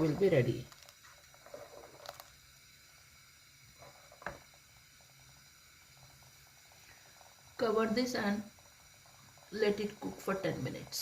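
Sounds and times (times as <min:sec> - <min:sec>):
stew bubbling in a pot: 0:00.0 - 0:11.0.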